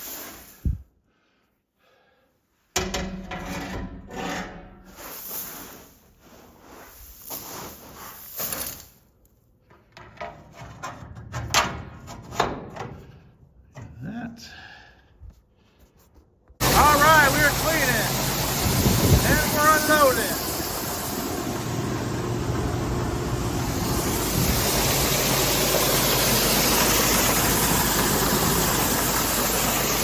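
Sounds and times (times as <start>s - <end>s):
scraping and rubbing: 3.3s - 9.0s.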